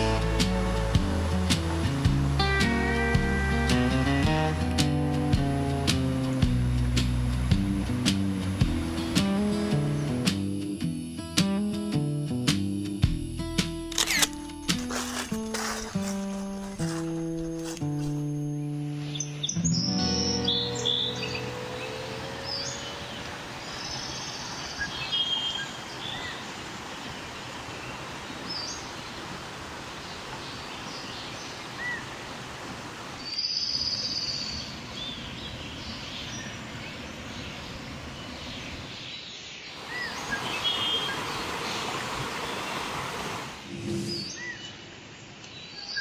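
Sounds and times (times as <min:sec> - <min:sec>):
steady noisy hiss: 0:00.0 - 0:45.7
bird chirps: 0:15.6 - 0:26.4
rising and falling whistled call: 0:19.1 - 0:25.6.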